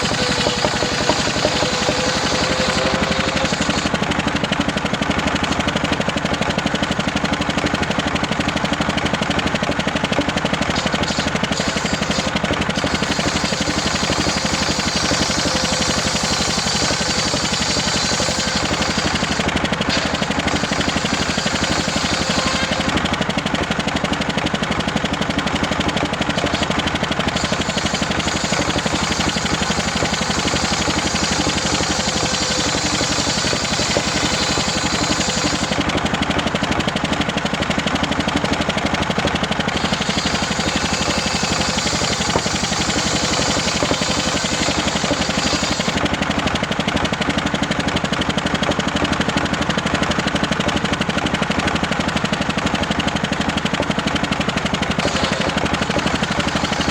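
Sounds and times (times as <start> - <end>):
saw blade hissing through wood: 0.0 - 4.0, 10.8 - 23.0, 26.4 - 35.8, 39.8 - 46.0, 55.0 - 56.9
sawmill motor throbbing: 0.0 - 56.9.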